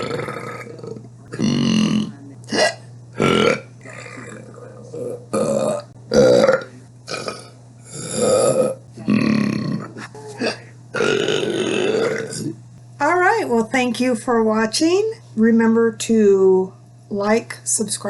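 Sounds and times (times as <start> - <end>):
woman burping: 0.0 - 12.6.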